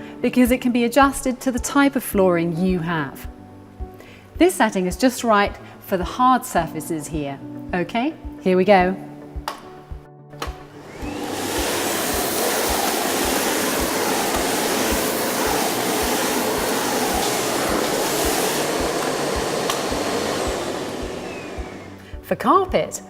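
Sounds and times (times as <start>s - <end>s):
vacuum cleaner motor whine: 10.4s - 22.1s.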